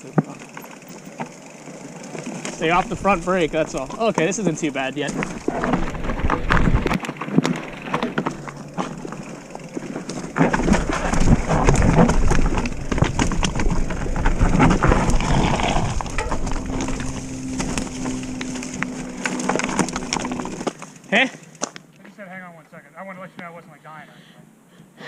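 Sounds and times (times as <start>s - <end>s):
bike rattling: 0.0s - 21.9s
tyres crunching on dirt: 0.0s - 22.2s
wind buffeting microphone: 5.2s - 7.0s, 10.2s - 19.2s.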